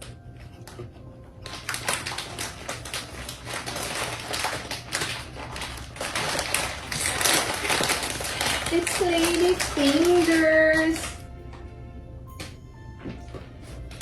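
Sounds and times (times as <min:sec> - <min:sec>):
packaging crinkling: 0:00.0 - 0:11.3.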